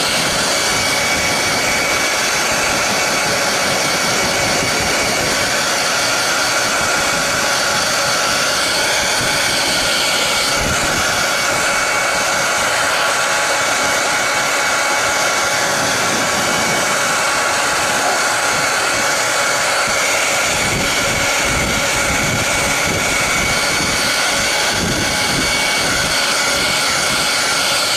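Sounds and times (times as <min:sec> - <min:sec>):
hair dryer running: 0:00.0 - 0:27.9
low air buffeting: 0:00.0 - 0:27.9.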